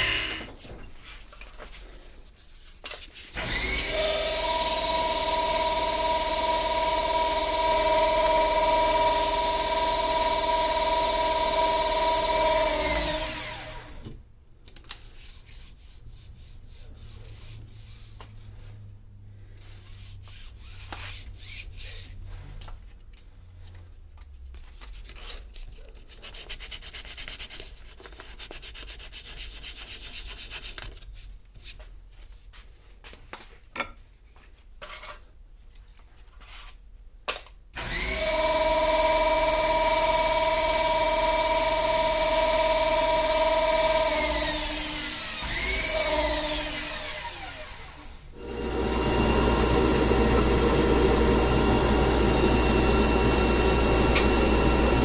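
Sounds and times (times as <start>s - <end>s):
power tool motor running: 0.0s - 0.6s, 3.4s - 14.0s, 37.8s - 55.0s.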